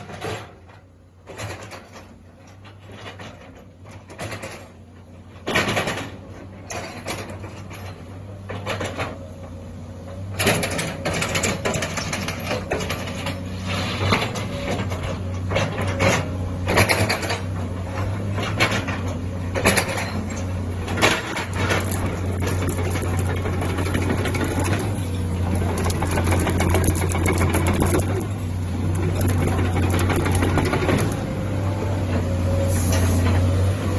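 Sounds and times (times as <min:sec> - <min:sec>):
excavator diesel engine humming: 0:06.0 - 0:33.9
clanks and knocks: 0:14.0 - 0:31.2.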